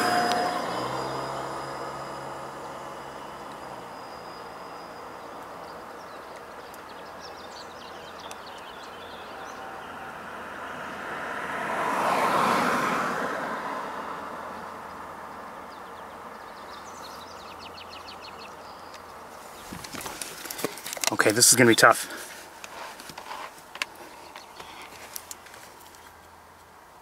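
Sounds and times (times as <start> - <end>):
vehicle road noise whoosh: 0.0 - 18.2.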